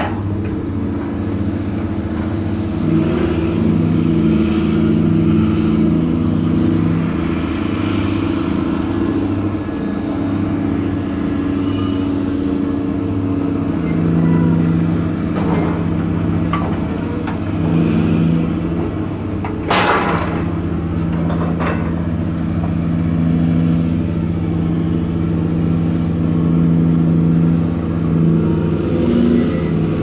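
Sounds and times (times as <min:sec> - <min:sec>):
diesel engine droning under load: 0:00.0 - 0:30.0.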